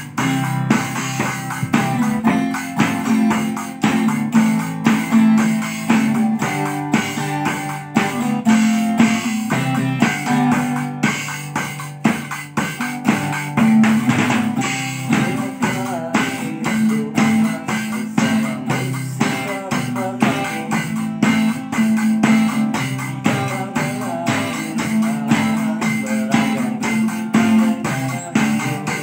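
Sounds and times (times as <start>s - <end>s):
instrumental guitar band music: 0.0s - 29.0s.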